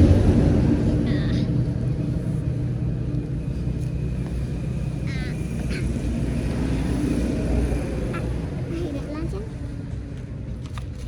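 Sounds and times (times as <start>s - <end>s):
low motor rumble: 0.0s - 11.0s.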